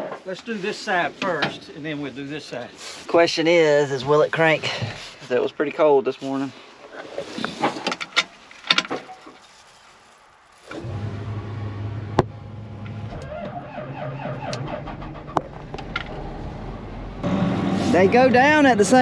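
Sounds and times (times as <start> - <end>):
diesel engine starting and idling: 10.7 - 19.0.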